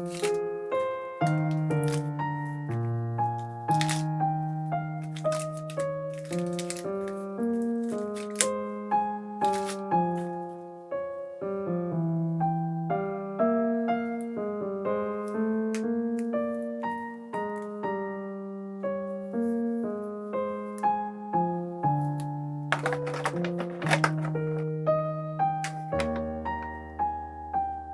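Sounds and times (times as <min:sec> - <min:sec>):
piano music with bass line: 0:00.0 - 0:27.9
handling clicks: 0:22.8 - 0:24.7, 0:25.6 - 0:26.7.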